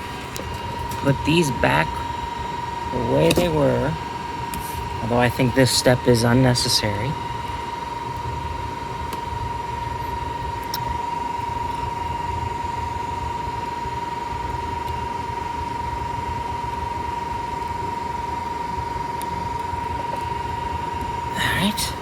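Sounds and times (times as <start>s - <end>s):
high-pitched whine: 0.0s - 22.0s
mechanical fan hum: 0.0s - 22.0s.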